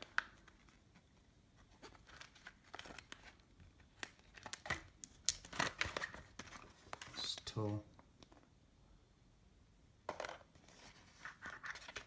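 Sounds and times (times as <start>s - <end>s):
plastic packaging crinkling: 1.7s - 7.6s.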